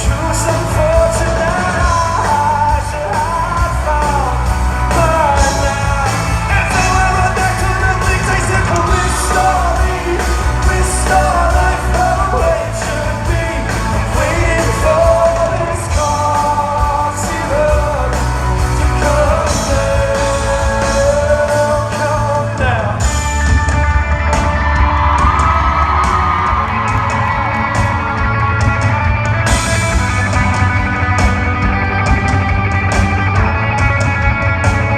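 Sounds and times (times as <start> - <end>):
person singing: 0.0 - 23.2
heavy bass: 0.0 - 34.9
live rock band playing: 0.0 - 34.9.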